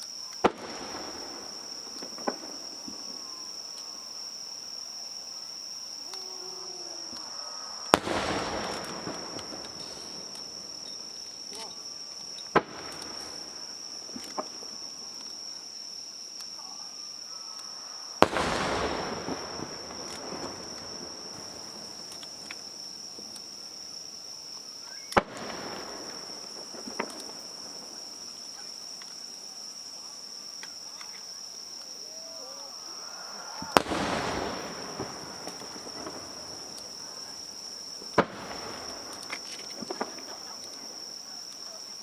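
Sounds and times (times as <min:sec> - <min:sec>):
small firework pops: 0:00.0 - 0:04.0, 0:06.0 - 0:15.7, 0:17.6 - 0:32.4, 0:33.5 - 0:42.0
insect drone: 0:00.0 - 0:42.0
firework shells bursting: 0:00.3 - 0:04.0, 0:07.1 - 0:15.7, 0:18.2 - 0:29.8, 0:32.9 - 0:42.0.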